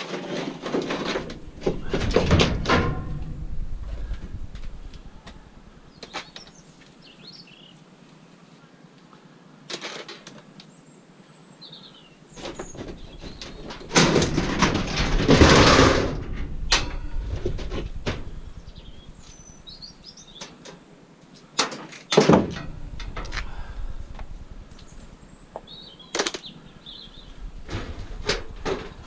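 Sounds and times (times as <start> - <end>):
scrap metal knocking: 0.0 - 5.3, 13.3 - 19.0
metal scraping rattle: 0.0 - 5.7, 12.6 - 19.4, 22.1 - 25.3, 27.2 - 29.0
birds chirping: 3.9 - 7.8, 10.6 - 14.0, 16.5 - 20.9, 22.1 - 29.0.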